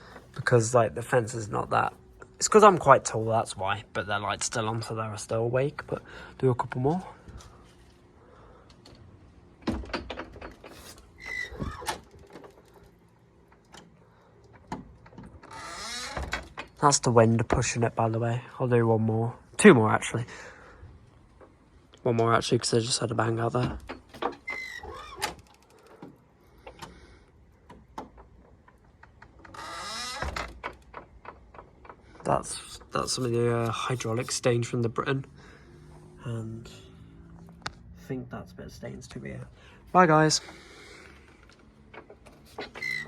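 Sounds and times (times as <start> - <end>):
gate squeaking: 10.7 - 12.2, 15.4 - 16.5, 24.2 - 25.4, 29.4 - 30.8, 42.0 - 43.0.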